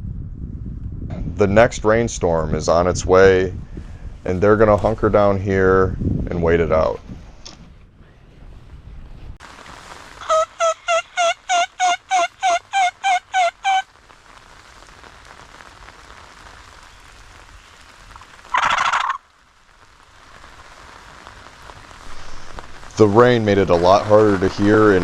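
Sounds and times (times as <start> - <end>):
rain hissing: 9.4 - 25.0
turkey yelps: 10.2 - 13.8, 18.5 - 19.2
loud noisy burst: 16.5 - 25.0.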